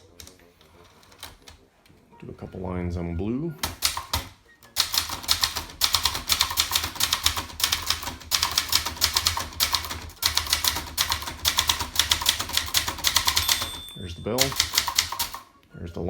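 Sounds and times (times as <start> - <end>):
manual typewriter key strikes: 3.6 - 15.5.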